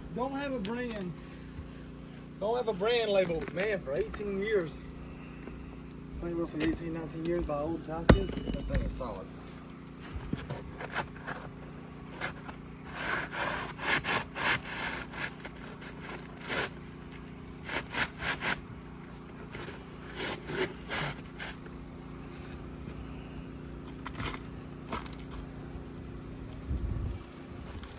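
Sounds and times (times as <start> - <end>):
scraping roof shingle: 10.0 - 22.7.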